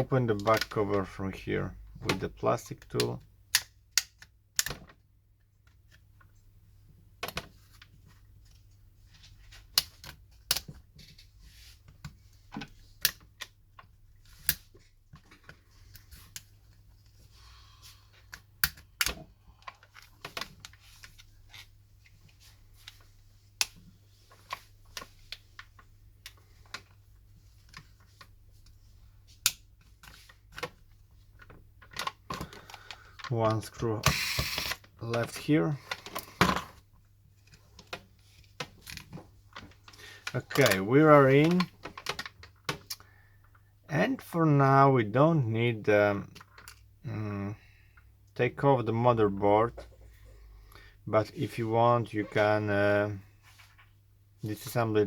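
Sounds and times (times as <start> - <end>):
plastic clicks and snaps: 2.0 - 4.9.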